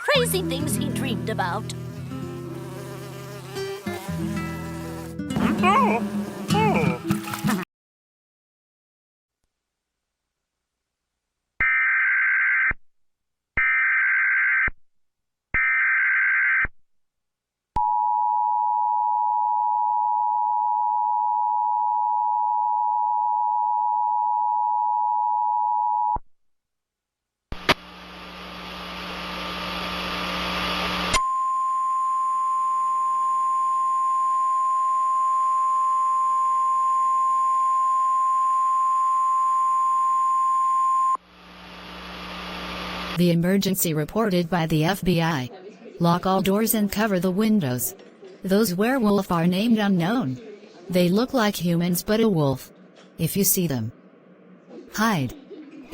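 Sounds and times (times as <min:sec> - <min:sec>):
buzzing data bursts: 0:00.0 - 0:07.4
burst of static: 0:41.3 - 0:43.2.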